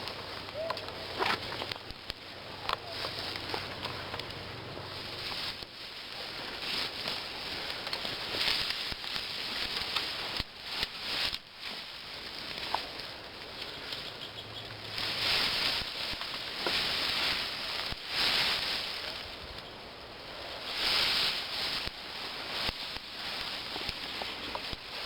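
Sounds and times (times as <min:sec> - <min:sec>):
faint sharp clicks: 0:00.0 - 0:04.4
footsteps in brush: 0:00.0 - 0:25.0
leaves and branches rustling: 0:00.0 - 0:25.0.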